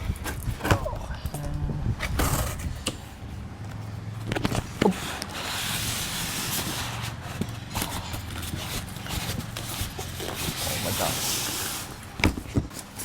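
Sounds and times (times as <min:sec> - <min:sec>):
packaging rustling: 0:04.3 - 0:13.0.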